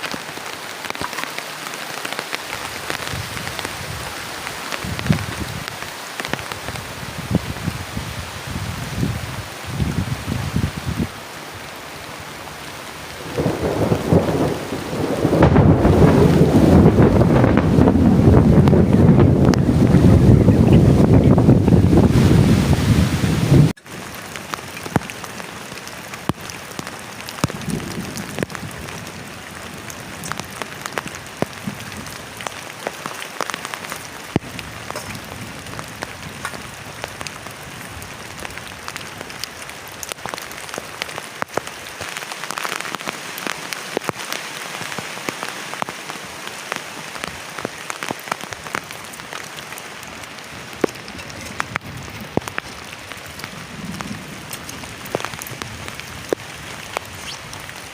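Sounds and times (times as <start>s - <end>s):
heavy rain on plastic tarp: 0.0s - 57.9s
wind noise on microphone: 2.6s - 11.2s, 13.3s - 23.8s, 27.3s - 32.4s.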